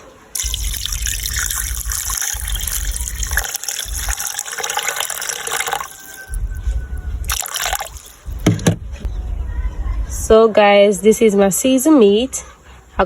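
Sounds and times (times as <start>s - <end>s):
tap water running into bowl: 0.4s - 6.1s.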